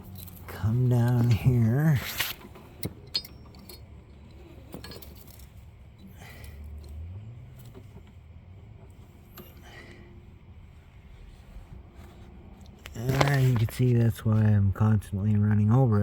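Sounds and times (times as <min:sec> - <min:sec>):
light metallic clinks and taps: 0:02.8 - 0:05.6.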